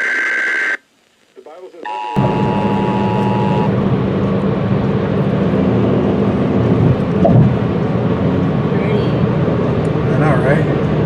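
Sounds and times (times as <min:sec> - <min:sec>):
steady rumbling noise: 0:01.0 - 0:11.0
two-tone attention signal: 0:01.8 - 0:03.8.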